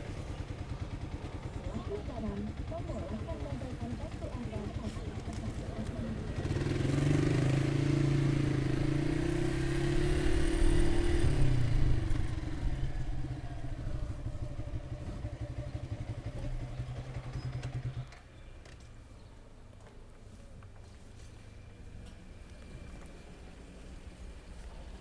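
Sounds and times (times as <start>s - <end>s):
motorcycle engine running: 0.0s - 18.3s.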